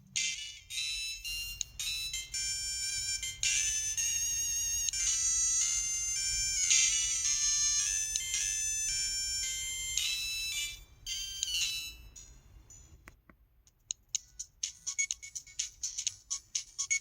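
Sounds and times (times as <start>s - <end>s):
phone ringtone electronic melody: 0.1s - 12.8s, 14.6s - 17.0s.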